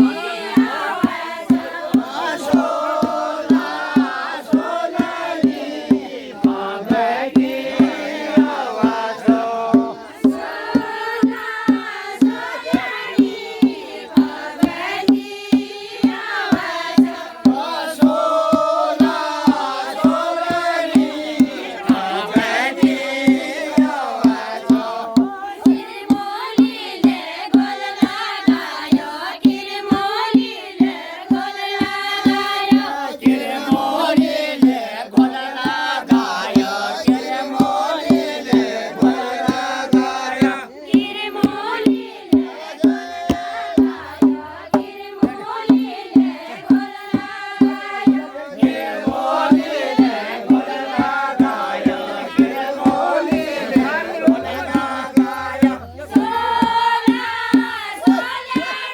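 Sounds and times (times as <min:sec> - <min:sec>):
group of voices singing: 0:00.0 - 0:58.9
steady drum beat: 0:00.0 - 0:58.9.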